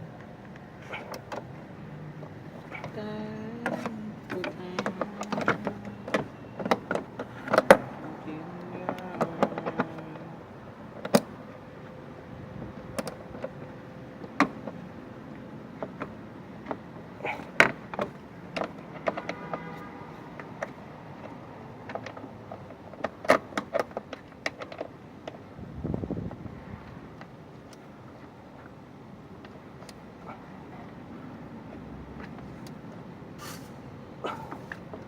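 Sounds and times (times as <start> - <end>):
faint steady hum: 0.0 - 18.4.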